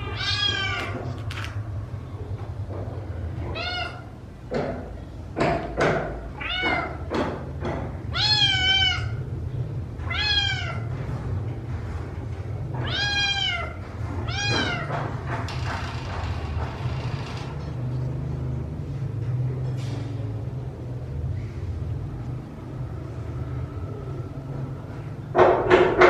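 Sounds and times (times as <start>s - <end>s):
kittens meowing: 0.0s - 1.2s, 3.4s - 4.2s, 8.1s - 9.2s, 10.0s - 10.9s, 12.8s - 14.9s.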